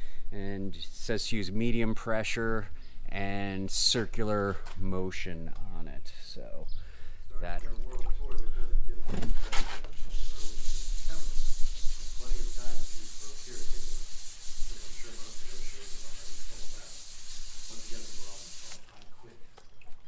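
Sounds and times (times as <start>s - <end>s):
wet sandpaper rubbing: 9.9s - 18.9s.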